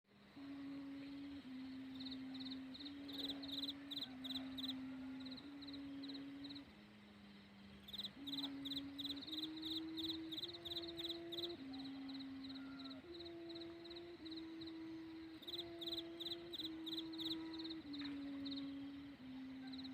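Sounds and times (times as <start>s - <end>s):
kite hummer droning: 0.1s - 19.9s
high-pitched chirping: 7.9s - 14.8s, 15.4s - 18.7s.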